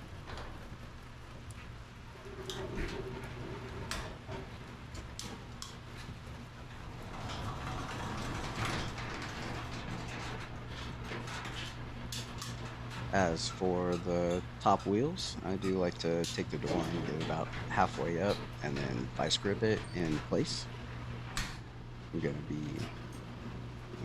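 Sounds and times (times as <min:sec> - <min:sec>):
garage door rolling and scraping: 0:00.0 - 0:24.0
steady low hum: 0:00.0 - 0:24.0
metal clicks and rattles: 0:07.0 - 0:14.4.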